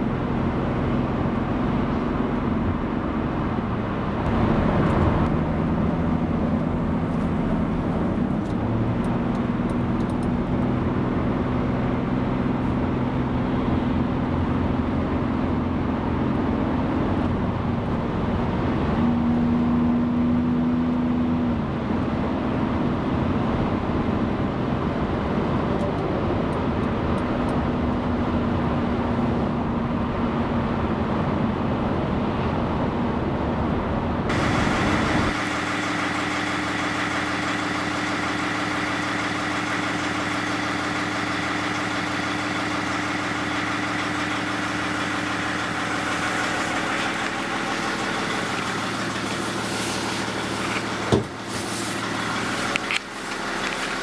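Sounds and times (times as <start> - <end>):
high motor whine: 34.3 - 54.0
motor running with low hum: 34.3 - 54.0.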